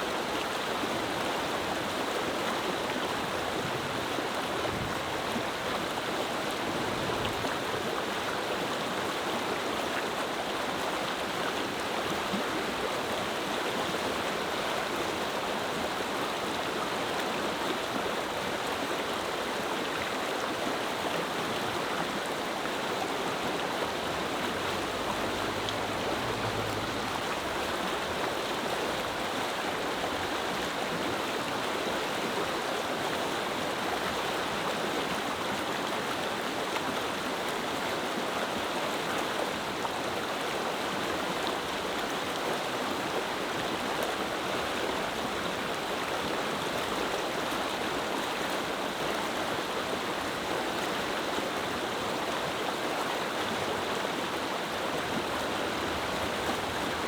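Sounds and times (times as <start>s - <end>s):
river water rushing: 0.0s - 57.0s.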